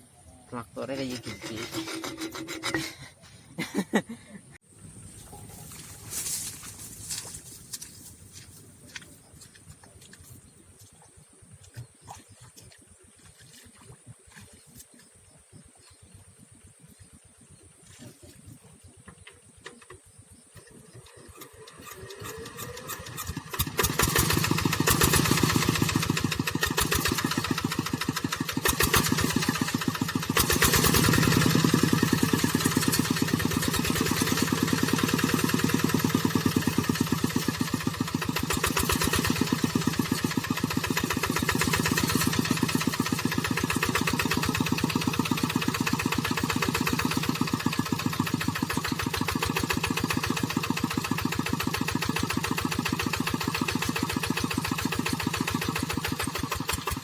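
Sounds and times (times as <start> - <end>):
diesel tractor engine running: 4.7 - 8.4, 21.1 - 57.0.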